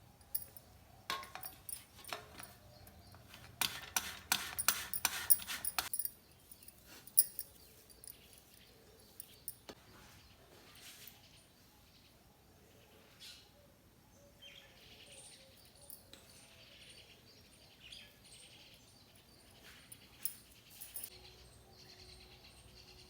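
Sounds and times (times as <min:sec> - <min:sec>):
hard objects clinking and clattering: 0:00.2 - 0:02.6, 0:03.3 - 0:09.7, 0:19.9 - 0:21.1.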